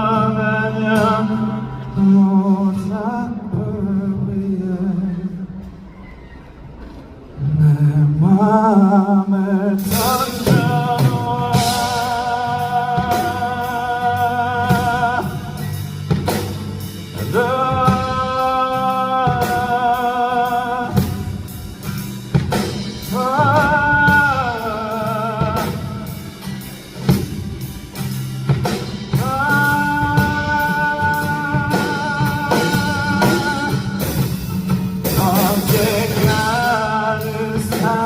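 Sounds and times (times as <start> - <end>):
male singer holding long notes: 0.0 - 5.7, 7.4 - 15.8, 17.2 - 21.5, 23.0 - 26.3, 29.1 - 34.4, 35.0 - 38.0
drum kit: 0.0 - 6.1, 9.6 - 38.0
bass: 0.0 - 38.0.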